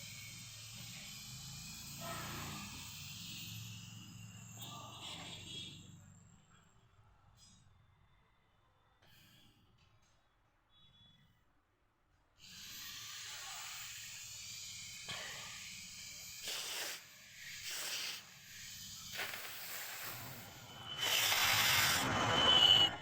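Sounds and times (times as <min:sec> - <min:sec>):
steady hiss: 0:13.6 - 0:22.3
nose blowing and sniffing: 0:16.4 - 0:22.0.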